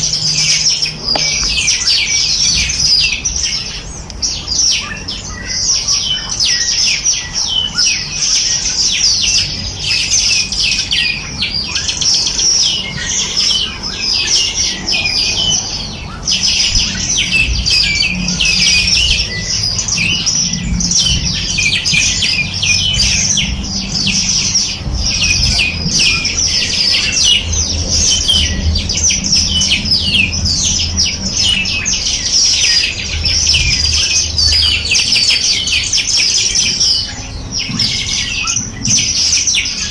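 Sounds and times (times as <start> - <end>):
songbirds chirping and trilling: 0.0 - 39.9
faint low rumble: 12.9 - 36.2.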